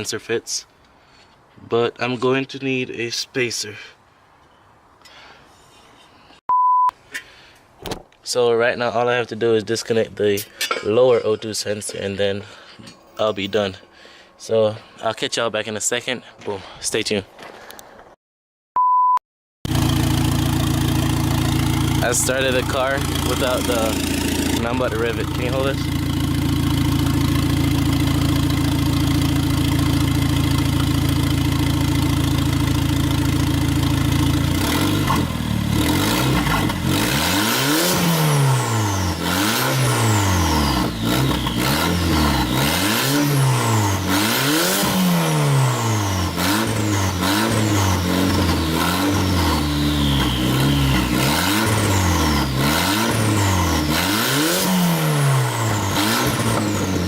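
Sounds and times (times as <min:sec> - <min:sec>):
car engine idling and revving: 0:19.7 - 0:57.0
turbo whistle: 0:49.7 - 0:51.0.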